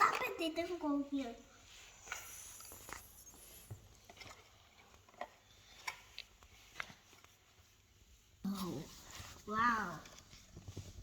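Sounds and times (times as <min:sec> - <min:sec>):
plastic toys clicking and tapping: 0:00.0 - 0:00.5, 0:04.0 - 0:07.3.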